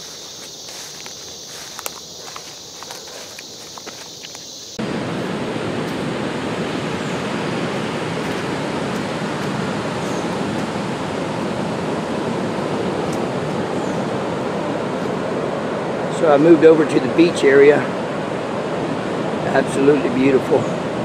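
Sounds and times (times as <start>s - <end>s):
ocean surf breaking on beach: 4.8s - 21.0s.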